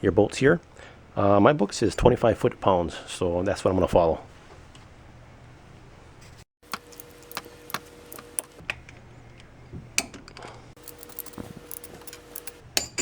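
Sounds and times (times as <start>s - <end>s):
torque wrench ratcheting clicks: 6.7s - 8.6s, 10.8s - 12.7s.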